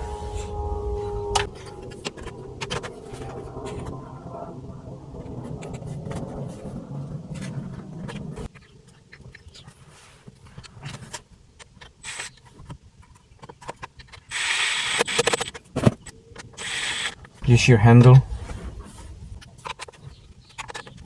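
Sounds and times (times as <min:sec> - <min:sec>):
steady low hum: 0:00.0 - 0:09.0, 0:16.1 - 0:20.5.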